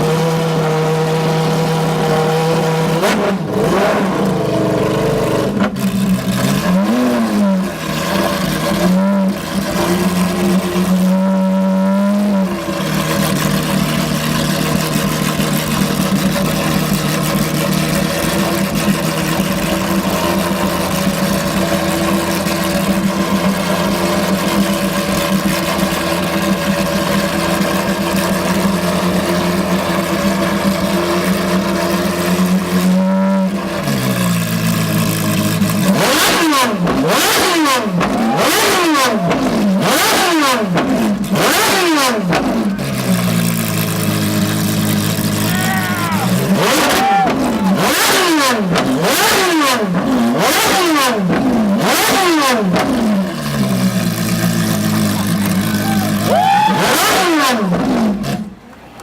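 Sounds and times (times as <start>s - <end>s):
car engine at raised idle: 0.0s - 58.8s
car engine revving: 0.0s - 58.8s.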